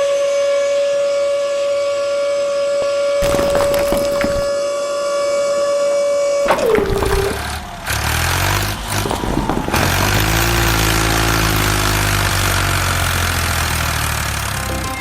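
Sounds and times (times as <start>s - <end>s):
truck engine idling: 6.6s - 15.0s.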